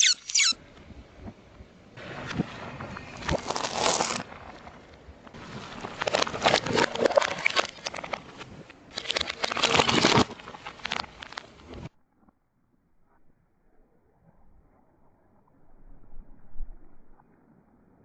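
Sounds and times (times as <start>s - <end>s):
tyre crushing crackling objects: 2.5s - 11.6s.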